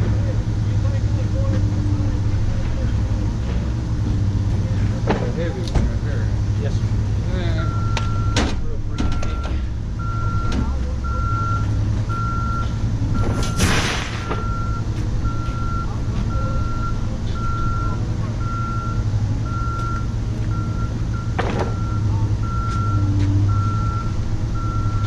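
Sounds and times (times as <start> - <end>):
engine low rumble: 0.0 - 25.0
reverse warning alarm beeping: 7.6 - 25.0.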